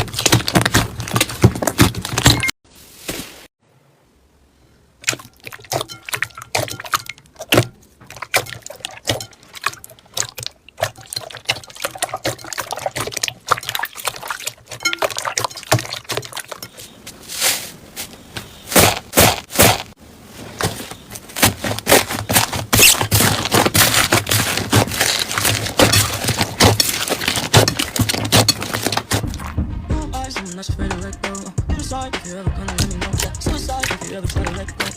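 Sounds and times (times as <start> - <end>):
slime squelches: 5.0 - 29.6.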